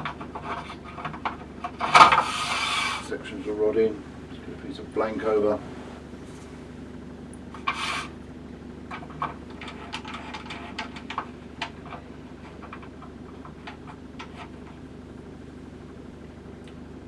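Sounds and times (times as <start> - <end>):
steady low hum: 0.0 - 17.0
small clicks and light taps: 16.2 - 16.9.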